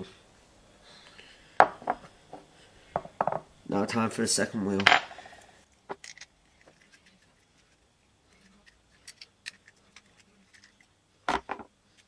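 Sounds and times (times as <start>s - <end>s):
metal parts clicking: 6.0s - 7.1s, 8.6s - 10.8s.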